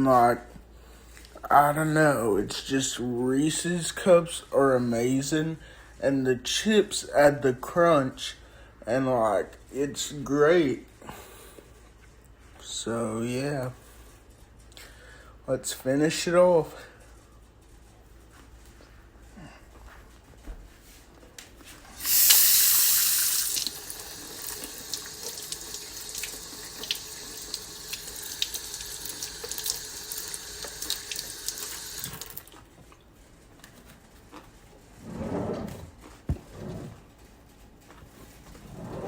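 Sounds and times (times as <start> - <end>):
water running into sink: 22.0 - 32.5.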